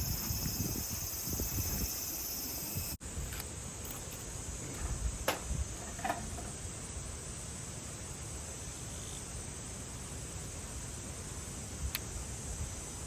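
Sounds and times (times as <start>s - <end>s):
insects buzzing: 0.0s - 10.0s.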